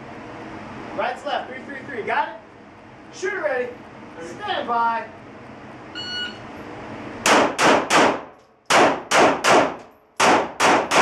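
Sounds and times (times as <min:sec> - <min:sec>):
shot timer beep: 0:06.0 - 0:06.4
pistol shots: 0:07.2 - 0:11.0.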